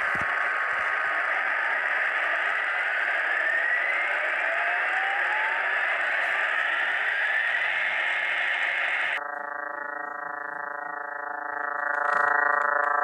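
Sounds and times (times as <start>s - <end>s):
hiss with rising tones: 0.0s - 9.2s
electronic drone of stacked tones: 0.0s - 13.0s.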